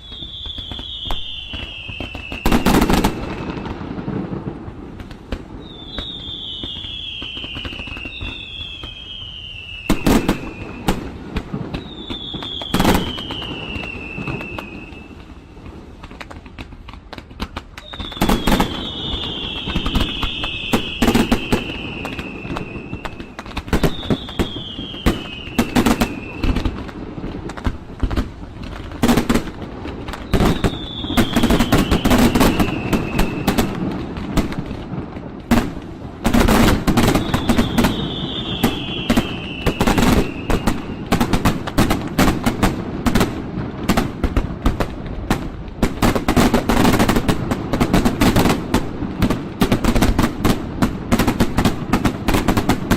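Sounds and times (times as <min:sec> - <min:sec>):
falling firework whistle: 0:00.0 - 0:16.2, 0:17.5 - 0:28.2, 0:28.9 - 0:43.2
firework bangs and crackles: 0:00.0 - 0:52.9.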